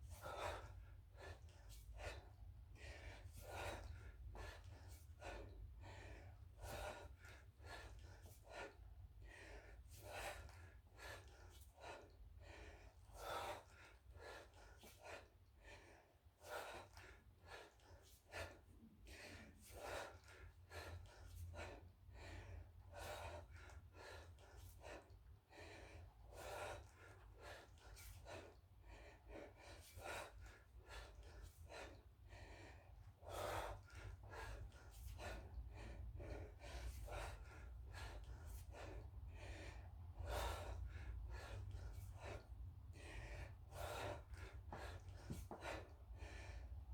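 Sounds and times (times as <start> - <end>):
man breathing hard: 26.0 - 46.9.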